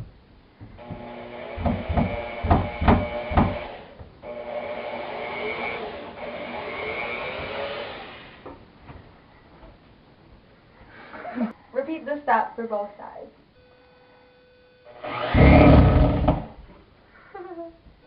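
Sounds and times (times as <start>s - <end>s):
sharp knocks: 0.6s - 3.7s
power drill motor whining: 0.8s - 8.4s, 14.9s - 16.6s.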